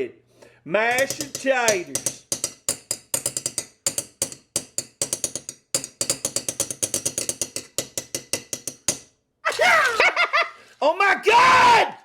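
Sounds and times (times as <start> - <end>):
sharp clicks and clacks: 0.9 - 9.0.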